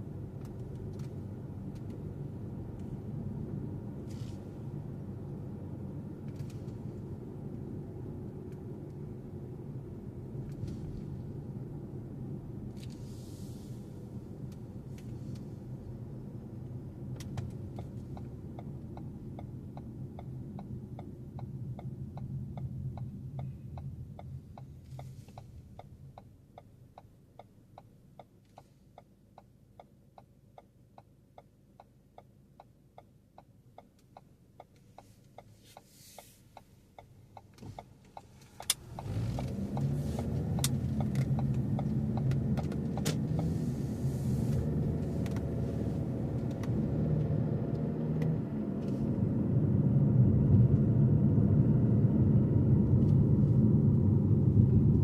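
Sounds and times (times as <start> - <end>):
car engine and road rumble: 0.0 - 55.0
turn signal ticking: 14.0 - 49.5.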